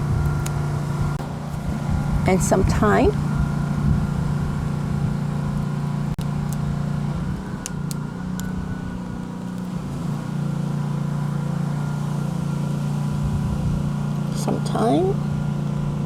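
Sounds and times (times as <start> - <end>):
motor humming: 0.0 - 16.0.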